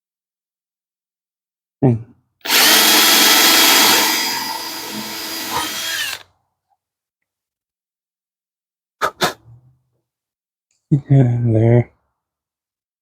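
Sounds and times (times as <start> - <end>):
power drill boring into wood: 2.4 - 6.2.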